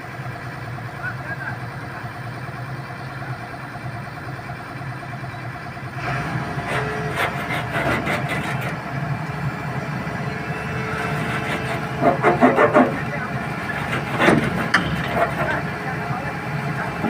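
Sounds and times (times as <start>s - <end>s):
heavy machine engine running: 0.0s - 17.0s
held whine: 3.0s - 17.0s
sharp knocks: 13.8s - 15.6s.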